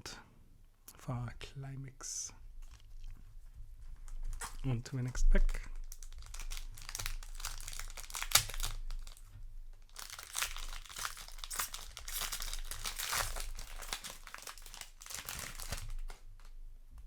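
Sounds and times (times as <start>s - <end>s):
wrapper crinkling: 2.6s - 16.6s
wrapper being torn open: 4.1s - 4.7s, 5.8s - 16.6s.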